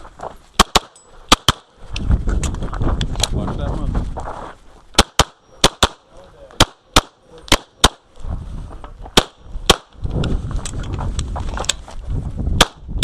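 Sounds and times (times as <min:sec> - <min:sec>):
pistol shots: 0:00.6 - 0:01.7, 0:05.0 - 0:08.0, 0:09.2 - 0:09.9.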